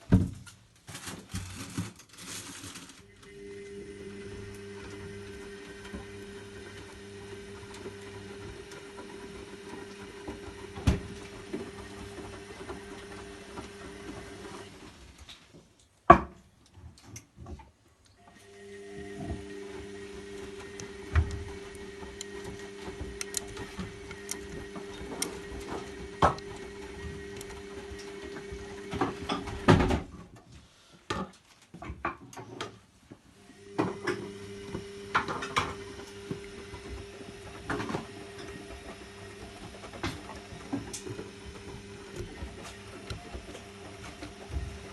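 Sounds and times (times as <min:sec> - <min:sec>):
washing machine motor hum: 0:03.0 - 0:15.2, 0:18.2 - 0:30.2, 0:33.3 - 0:44.9.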